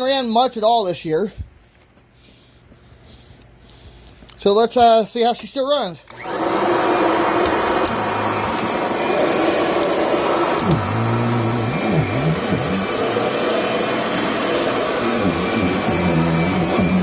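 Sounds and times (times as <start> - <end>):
vacuum cleaner running: 6.1 - 17.0.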